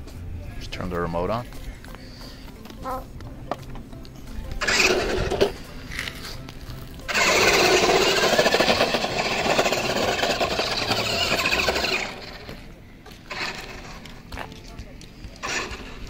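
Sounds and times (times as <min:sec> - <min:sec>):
rc truck motor whirring: 0:04.6 - 0:06.1, 0:07.1 - 0:14.2, 0:15.4 - 0:16.0.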